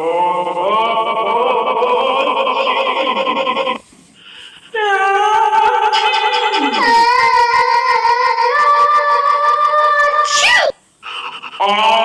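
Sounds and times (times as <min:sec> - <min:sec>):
wavering voice-like cry: 0:04.7 - 0:12.0.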